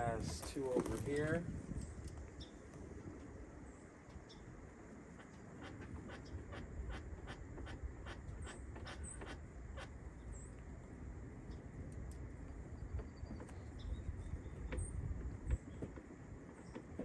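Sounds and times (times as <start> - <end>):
low handling rumble: 0.0 - 3.7.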